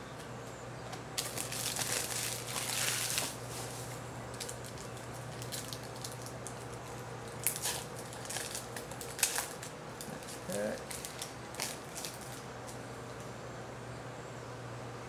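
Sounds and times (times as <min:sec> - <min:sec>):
steady low hum: 0:00.0 - 0:15.0
foil wrapper crinkling: 0:01.2 - 0:12.8.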